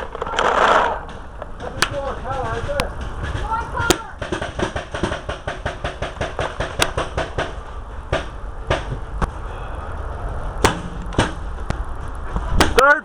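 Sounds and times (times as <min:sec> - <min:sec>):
steady low rumble: 0:00.0 - 0:12.8
paintball marker firing shots: 0:03.8 - 0:07.5, 0:10.6 - 0:11.4.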